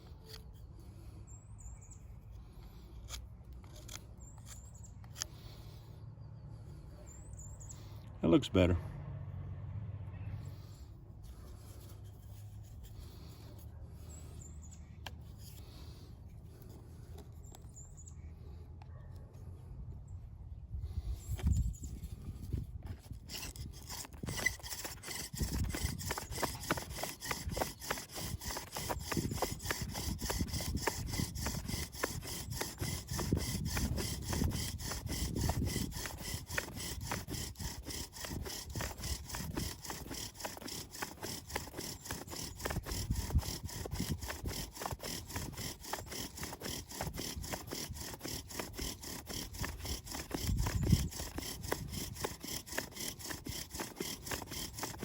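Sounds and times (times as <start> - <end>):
hand saw cutting wood: 11.3 - 17.7, 20.9 - 55.0.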